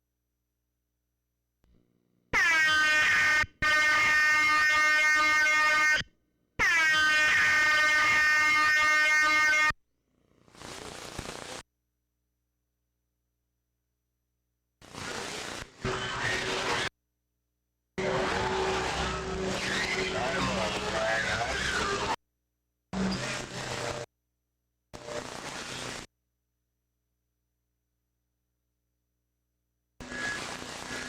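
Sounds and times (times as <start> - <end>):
buzzy horn blasts over radio: 2.4 - 9.8.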